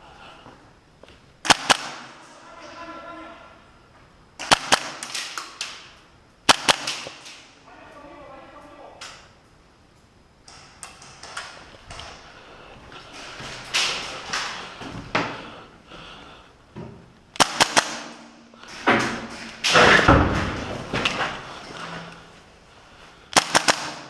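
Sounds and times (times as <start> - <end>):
airsoft gun shots: 1.4 - 2.1, 4.4 - 5.5, 6.5 - 7.2, 17.4 - 18.3, 23.3 - 24.0
footsteps: 8.6 - 15.7, 18.6 - 23.2.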